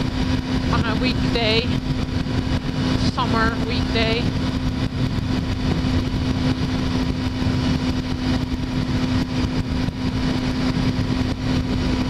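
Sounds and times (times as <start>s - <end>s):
motorcycle engine cruising: 0.0s - 12.0s
wind noise on microphone: 0.0s - 12.0s.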